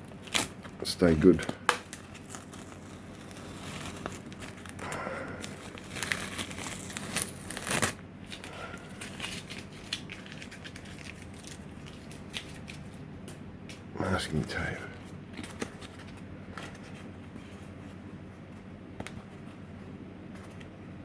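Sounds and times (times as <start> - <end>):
plastic crackling: 0.0 - 13.0
tape peeling and crumpling: 0.0 - 13.0.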